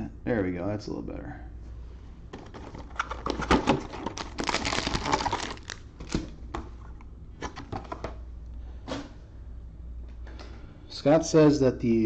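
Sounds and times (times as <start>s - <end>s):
packaging crinkling: 2.4s - 6.7s.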